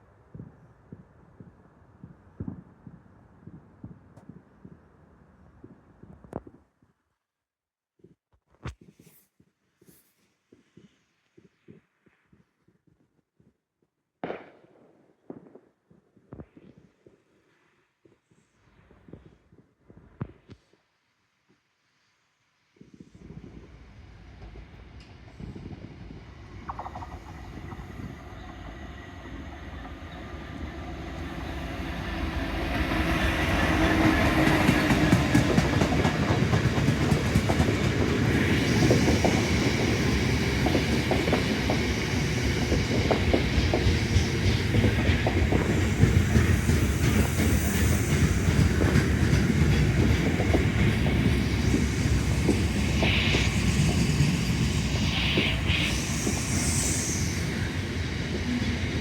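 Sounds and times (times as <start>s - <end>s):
train passing: 23.3s - 59.0s.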